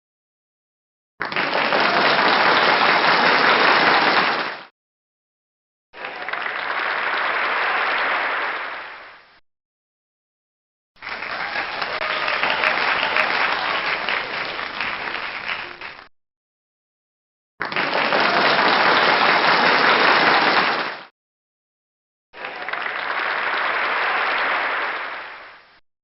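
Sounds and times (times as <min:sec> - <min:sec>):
crowd applause: 0:01.2 - 0:04.7, 0:06.0 - 0:09.3, 0:11.0 - 0:16.1, 0:17.6 - 0:21.1, 0:22.4 - 0:25.8.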